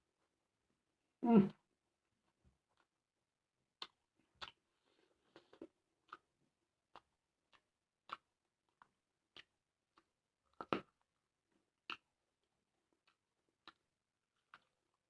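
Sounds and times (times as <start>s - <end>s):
chewing crunchy vegetables: 3.7s - 15.0s.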